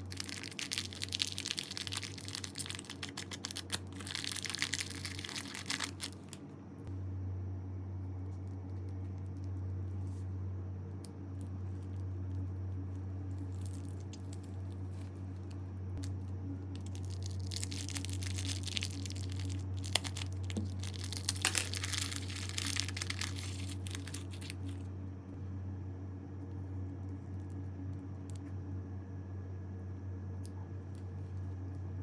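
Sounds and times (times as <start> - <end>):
slime crackling and popping: 0.0 - 6.4, 16.0 - 24.8
steady low hum: 0.0 - 32.0.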